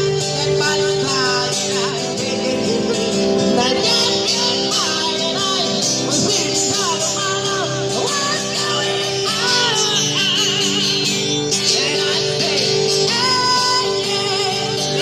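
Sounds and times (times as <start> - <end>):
guitar accompaniment: 0.0 - 15.0
person singing: 0.0 - 15.0.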